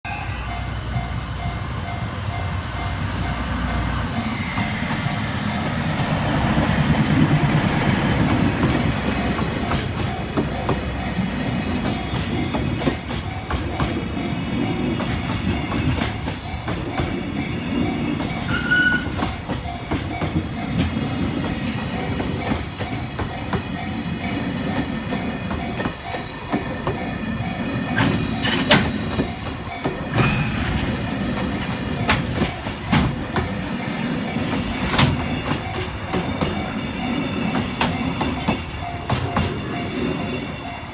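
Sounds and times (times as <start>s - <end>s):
freight train rumbling: 0.0s - 40.9s
sharp squeal: 0.1s - 8.2s, 18.4s - 19.3s, 22.5s - 23.8s
wheels clacking over rail joints: 3.8s - 40.9s.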